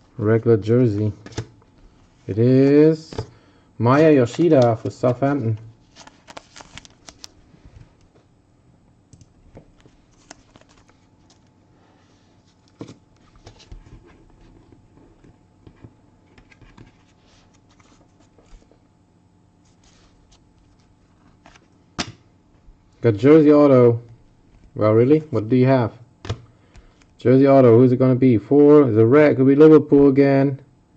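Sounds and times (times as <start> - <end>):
trading cards rustling and clicking: 3.9 - 7.4, 9.6 - 11.5.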